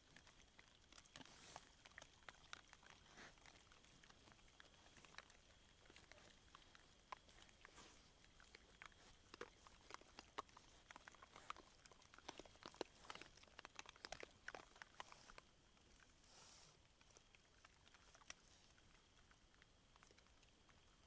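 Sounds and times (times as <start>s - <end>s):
boar crunching maize: 0.0s - 21.0s.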